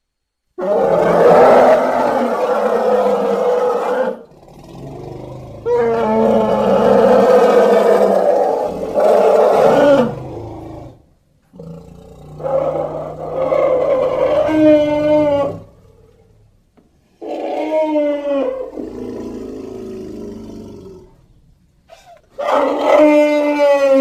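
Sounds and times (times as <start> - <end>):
elephant trumpeting: 0.6 - 4.2, 5.6 - 10.4, 12.3 - 16.1.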